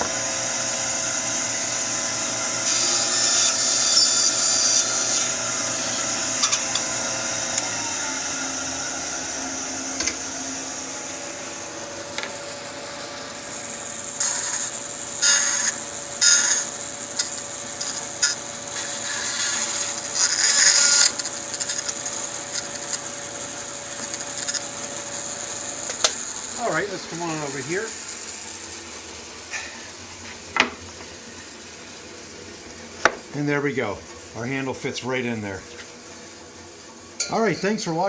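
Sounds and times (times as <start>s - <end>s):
bandsaw cutting wood: 0.0s - 28.6s.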